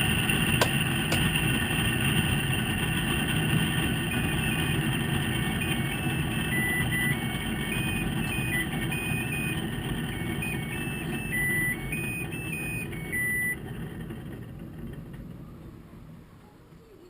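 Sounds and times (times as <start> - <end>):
washing machine rumble: 0.0 - 17.0
electronic beeping melody: 3.8 - 13.6.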